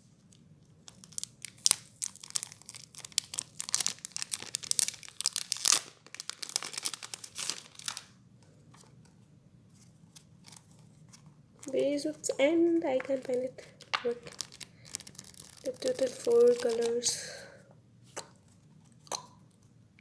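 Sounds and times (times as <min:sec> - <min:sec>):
plastic wrapper tearing and crinkling: 0:00.8 - 0:08.2, 0:10.1 - 0:17.4.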